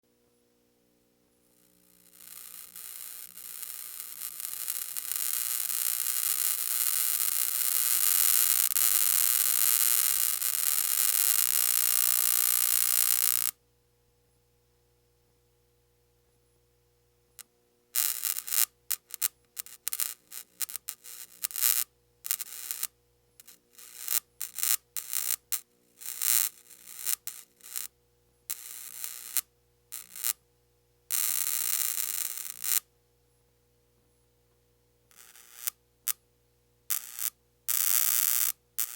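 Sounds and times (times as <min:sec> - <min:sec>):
electric static crackle: 0:01.5 - 0:13.5, 0:18.0 - 0:27.9, 0:28.5 - 0:30.4, 0:31.1 - 0:32.9, 0:35.1 - 0:35.8, 0:36.9 - 0:38.9.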